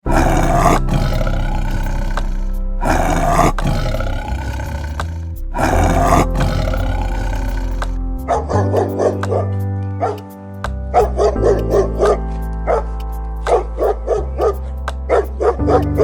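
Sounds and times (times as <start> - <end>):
big cat roaring: 0.0 - 8.0
background music: 0.0 - 16.0.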